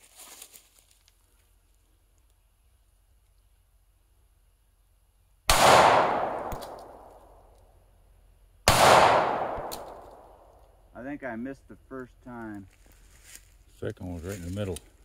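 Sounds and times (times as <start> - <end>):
pistol shots: 5.5 - 7.2, 8.7 - 10.4.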